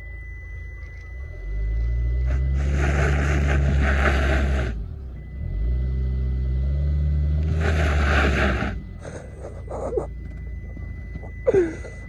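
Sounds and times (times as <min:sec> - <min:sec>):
car engine revving: 0:01.5 - 0:11.2
tyres spinning on snow: 0:02.2 - 0:04.9, 0:07.4 - 0:11.9.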